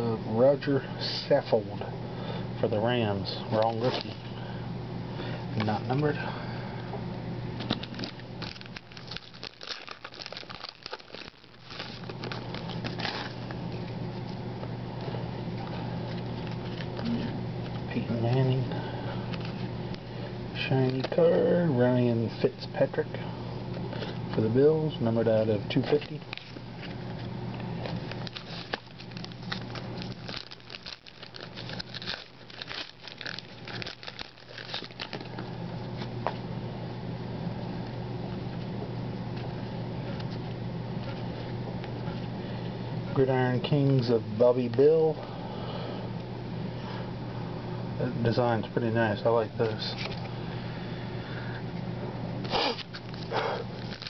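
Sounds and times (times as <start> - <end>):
steady low hum: 0.0 - 54.0
foil wrappers crinkling: 3.4 - 4.3, 7.6 - 13.9, 16.1 - 17.2, 25.8 - 35.6, 52.5 - 54.0
cards rustling and clicking: 3.5 - 4.2, 7.6 - 14.4, 25.8 - 36.1, 52.5 - 54.0.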